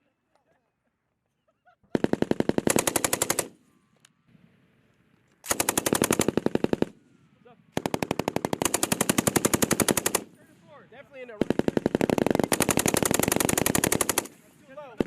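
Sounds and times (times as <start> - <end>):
machine gun firing bursts: 1.9 - 3.6, 5.4 - 7.0, 7.8 - 10.4, 11.2 - 15.0.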